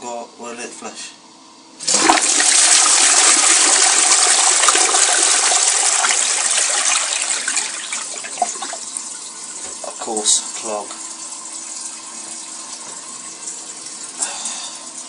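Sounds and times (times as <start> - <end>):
toilet flushing: 1.8 - 15.0.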